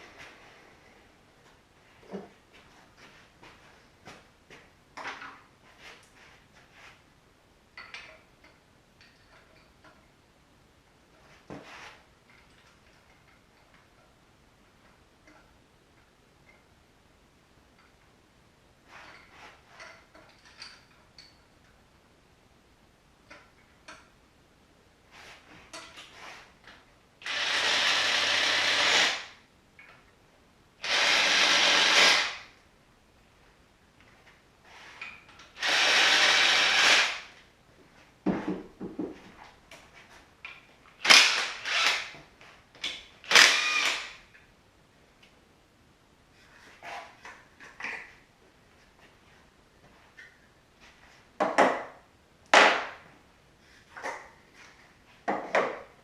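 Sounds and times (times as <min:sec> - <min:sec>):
metal tools clinking: 0:18.9 - 0:21.8
power tool on engine: 0:27.3 - 0:29.3, 0:30.8 - 0:32.4, 0:35.6 - 0:37.3.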